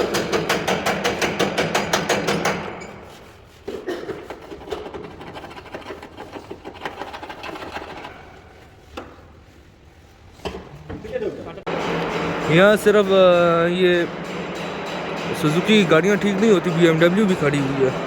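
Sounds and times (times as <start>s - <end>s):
rapid hammering: 0.0s - 2.8s, 11.7s - 18.0s
scraping and rubbing with clicks: 2.9s - 9.3s.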